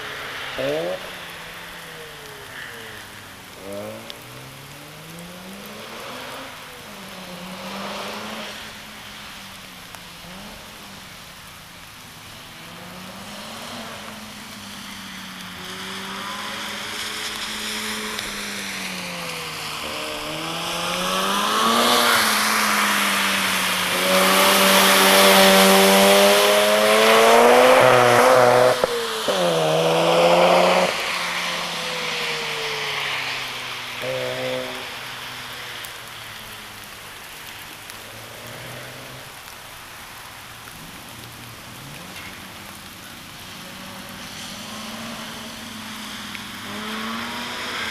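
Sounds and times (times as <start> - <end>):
rotary engine revving: 19.6 - 31.9, 43.5 - 47.9.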